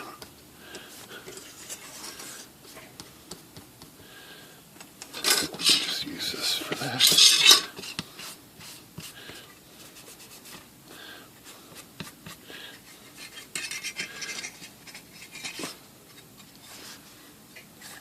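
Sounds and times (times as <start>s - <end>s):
cloth rag wiping metal cover: 5.6s - 9.0s.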